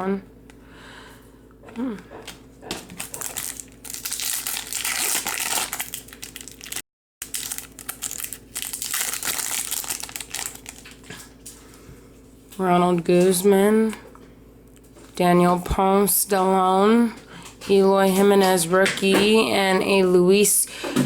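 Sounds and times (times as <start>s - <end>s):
foil wrapper crinkling: 2.9s - 11.5s.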